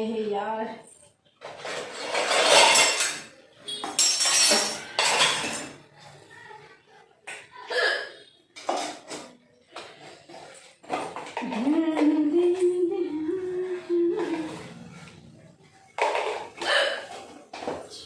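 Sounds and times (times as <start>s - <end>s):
pots and pans clattering: 1.4s - 6.0s, 7.7s - 12.7s, 15.9s - 18.0s.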